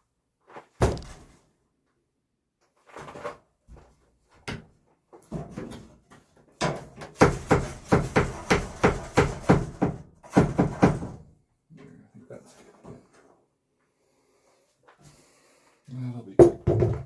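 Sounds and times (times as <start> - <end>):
hammer striking wood: 6.6 - 11.2.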